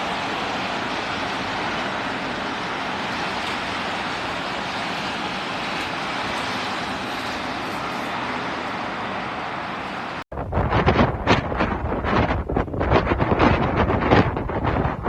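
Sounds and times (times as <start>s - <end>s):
steady rushing noise: 0.0s - 15.0s
wind buffeting microphone: 10.0s - 15.0s.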